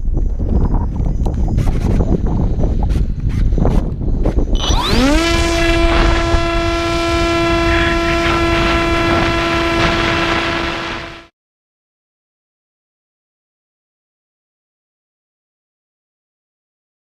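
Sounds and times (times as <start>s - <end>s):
wind rush: 0.0s - 11.3s
electric motor and propeller whine: 1.0s - 11.3s.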